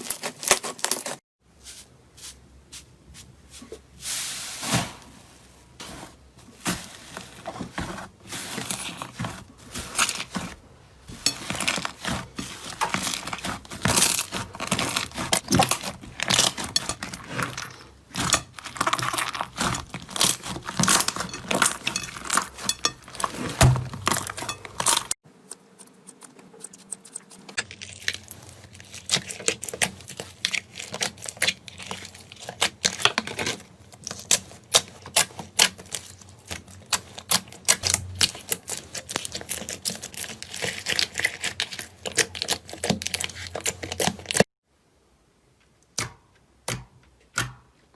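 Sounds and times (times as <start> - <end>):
slime clicking and crackling: 25.8 - 44.4.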